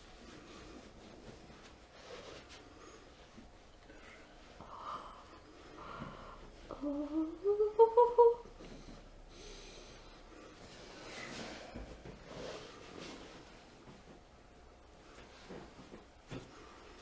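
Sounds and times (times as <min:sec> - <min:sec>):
soft breaths: 0:00.0 - 0:07.7, 0:08.4 - 0:17.0
woman moaning: 0:06.7 - 0:08.5.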